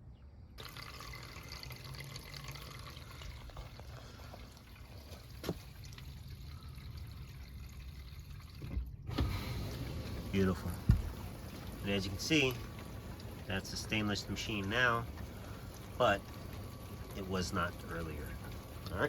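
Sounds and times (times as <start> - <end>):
dishwasher water rushing and splashing: 0.6 - 19.0.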